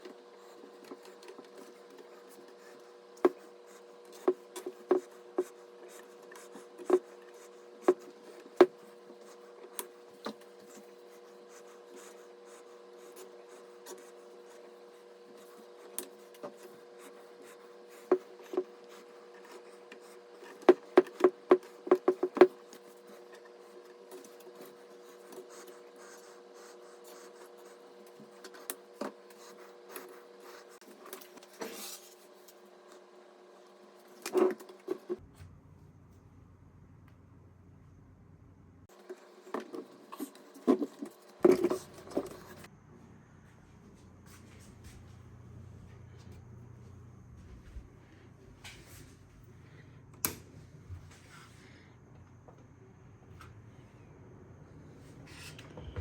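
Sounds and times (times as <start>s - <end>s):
steady low hum: 34.9s - 56.0s.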